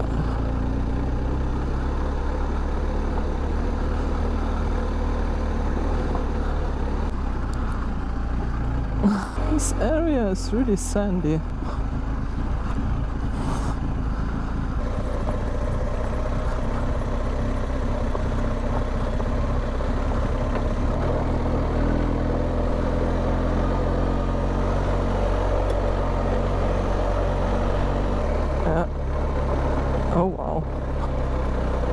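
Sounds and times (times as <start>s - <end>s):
motorcycle engine droning: 0.0s - 31.9s.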